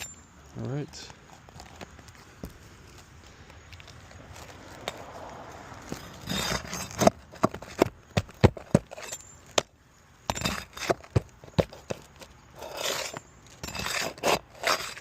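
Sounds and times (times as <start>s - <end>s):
scraping and rustling: 1.0s - 9.3s, 10.3s - 15.0s
metal tool knocking on shingles: 6.8s - 9.7s, 10.3s - 12.0s.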